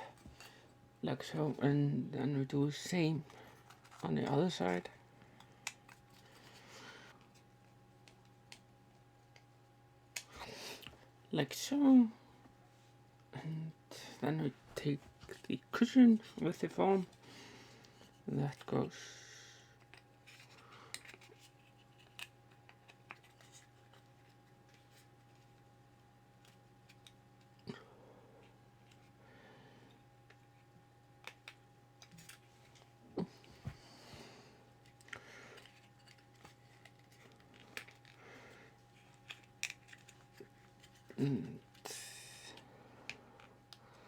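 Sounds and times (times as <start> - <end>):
faint steady hum: 0.0 - 44.0
light clicks of small parts: 34.8 - 38.2.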